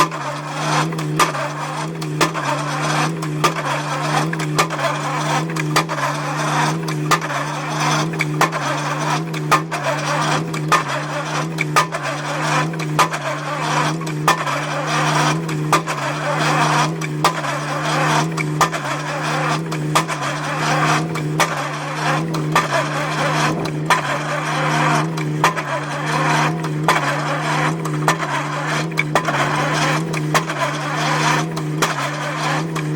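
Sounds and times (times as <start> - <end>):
machine engine drone: 0.0 - 32.9.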